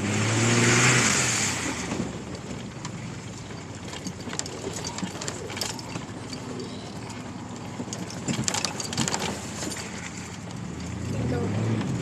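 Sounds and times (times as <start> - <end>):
low engine hum: 0.0 - 12.0
car body knocks and rattles: 7.9 - 9.8.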